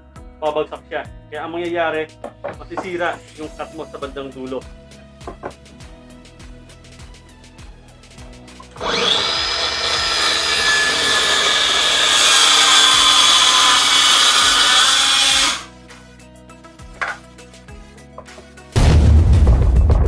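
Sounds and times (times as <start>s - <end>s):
circular saw cutting board: 8.6s - 15.7s.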